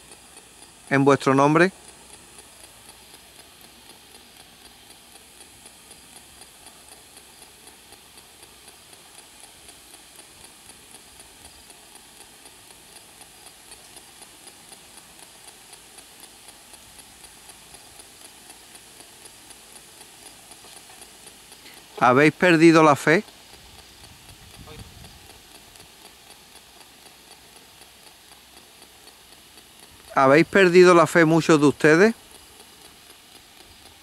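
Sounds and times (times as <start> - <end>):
radio static hiss: 0.0 - 3.8, 20.6 - 23.8, 24.4 - 25.4, 29.8 - 32.4.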